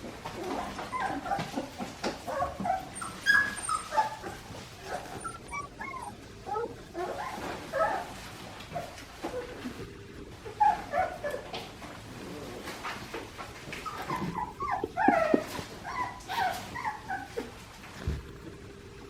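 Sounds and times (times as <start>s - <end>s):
puppies whimpering and yipping: 0.4s - 9.6s, 10.4s - 11.6s, 13.6s - 17.6s
puppy yelp: 0.5s - 8.2s, 10.6s - 11.5s, 13.7s - 17.6s.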